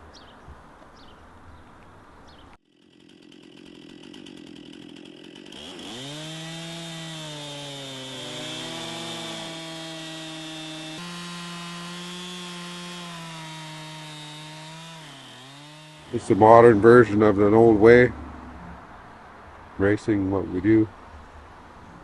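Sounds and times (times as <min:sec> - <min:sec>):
bird chirps: 0:00.0 - 0:02.6
chainsaw cutting wood: 0:02.6 - 0:17.6.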